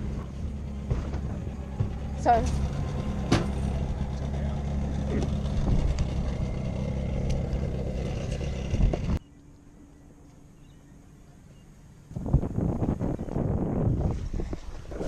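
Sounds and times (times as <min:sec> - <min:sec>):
vehicle engine running: 0:00.0 - 0:10.0.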